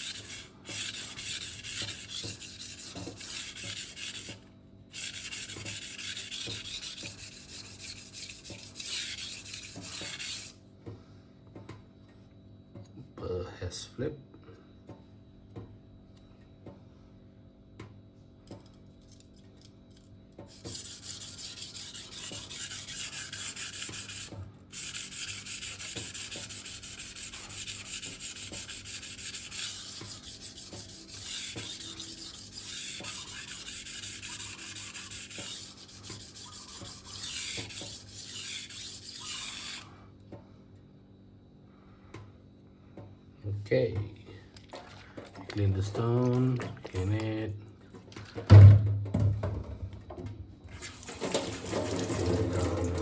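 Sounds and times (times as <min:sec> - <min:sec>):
knife scraping on whetstone: 0:00.0 - 0:10.6, 0:20.5 - 0:39.9.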